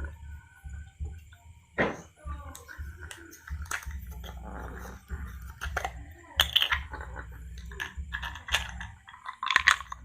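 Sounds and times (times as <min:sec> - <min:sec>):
steady low hum: 0:00.0 - 0:10.0
small hard objects clicking: 0:07.6 - 0:10.0.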